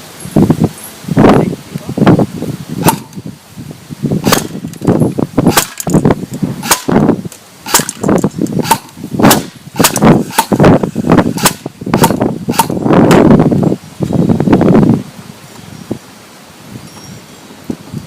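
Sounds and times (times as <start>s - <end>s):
airsoft rifle single shots: 4.2s - 4.6s.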